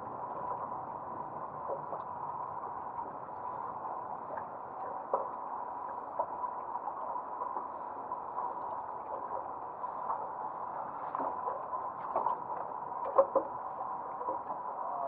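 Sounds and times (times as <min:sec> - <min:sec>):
water lapping and gurgling: 0:00.0 - 0:15.0.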